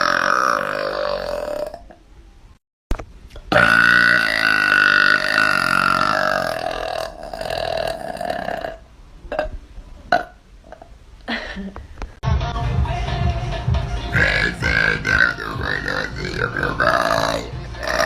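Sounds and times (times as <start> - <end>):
woman burping: 0.0 - 2.0, 3.5 - 11.8, 14.2 - 18.0.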